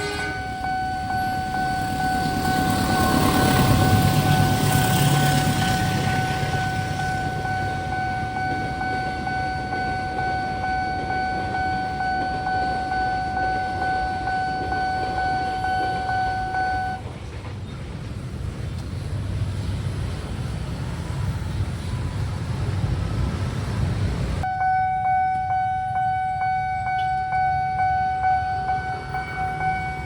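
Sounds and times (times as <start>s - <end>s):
passing train rumble: 0.0s - 30.0s
level-crossing electronic alarm tone: 0.4s - 17.0s, 24.4s - 30.0s.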